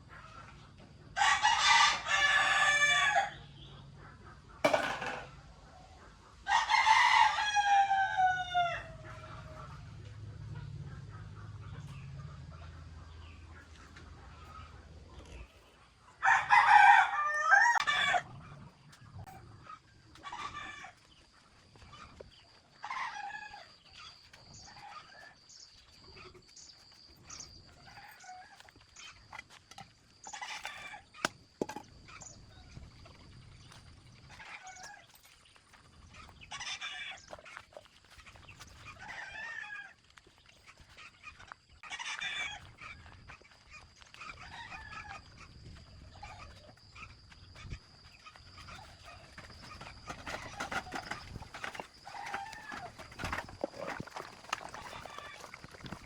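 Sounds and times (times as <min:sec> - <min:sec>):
chickens calling: 0:00.0 - 0:56.0
rooster crowing: 0:01.2 - 0:03.4, 0:06.5 - 0:09.8, 0:16.2 - 0:18.3.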